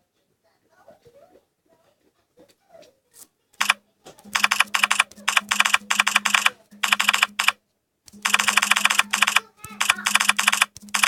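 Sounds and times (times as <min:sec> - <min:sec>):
phone keyboard tap clicks: 0:08.1 - 0:11.0.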